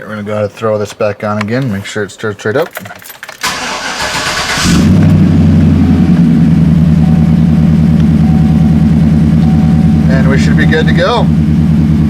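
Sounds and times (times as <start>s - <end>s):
engine starter cranking: 2.8s - 5.2s
engine idling: 3.5s - 12.0s.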